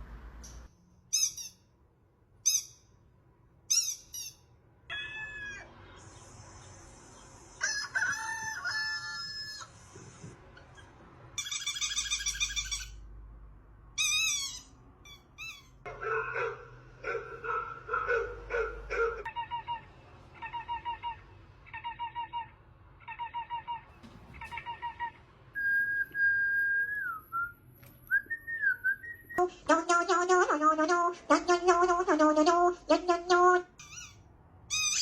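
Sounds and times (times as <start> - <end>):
bird-like calls and squawks: 3.7 - 13.0.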